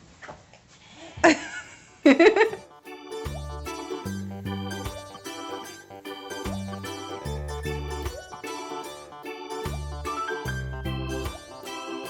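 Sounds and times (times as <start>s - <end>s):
harpsichord-like plucked melody: 2.5s - 12.0s
bouncy bass line: 3.3s - 11.7s.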